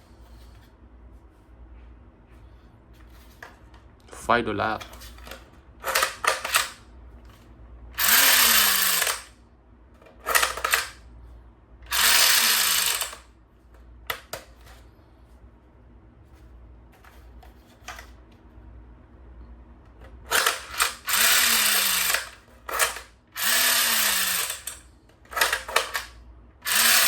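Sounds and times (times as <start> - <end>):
toy gun firing bursts: 5.8 - 6.8, 8.0 - 9.3, 11.9 - 13.2, 20.3 - 27.0.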